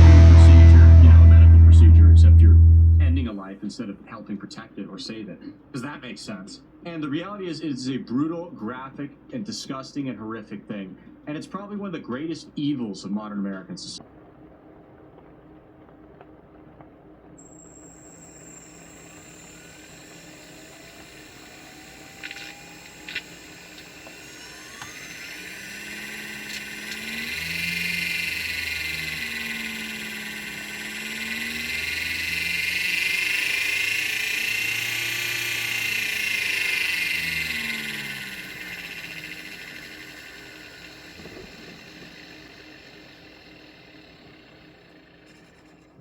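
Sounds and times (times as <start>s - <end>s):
electric motor whining: 0.0s - 3.4s, 17.3s - 46.0s
short clicks: 20.5s - 30.3s.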